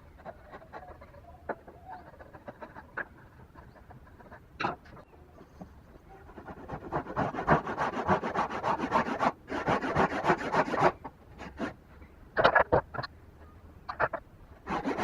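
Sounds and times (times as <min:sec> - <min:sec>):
hand tool scraping wood: 0:00.0 - 0:05.6, 0:06.2 - 0:11.8, 0:14.6 - 0:15.0.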